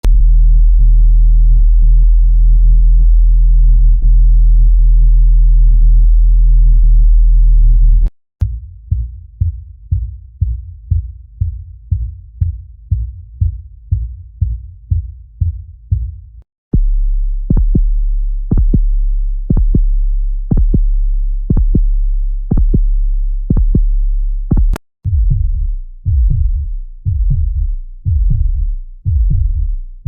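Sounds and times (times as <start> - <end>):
deep drone: 0.0 - 10.1, 16.8 - 30.0
heartbeat thumps: 0.0 - 16.9, 17.5 - 17.9, 18.5 - 18.9, 19.5 - 19.9, 20.5 - 20.9, 21.5 - 21.9, 22.5 - 22.9, 23.5 - 23.9, 24.5 - 30.0.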